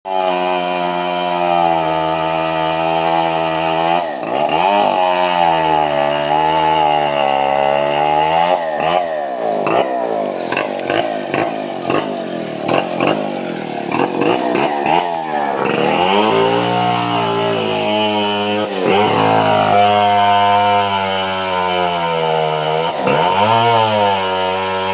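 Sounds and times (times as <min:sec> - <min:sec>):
chainsaw cutting log: 0:00.1 - 0:24.9.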